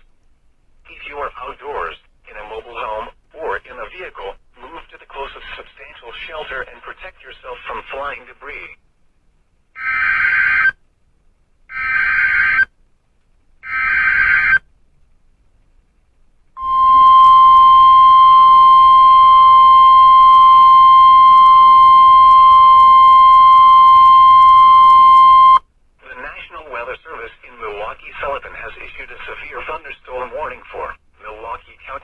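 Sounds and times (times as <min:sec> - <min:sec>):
screechy digital data bursts: 0:11.7 - 0:12.6, 0:13.7 - 0:14.6
steady warning alarm tone: 0:16.6 - 0:25.6.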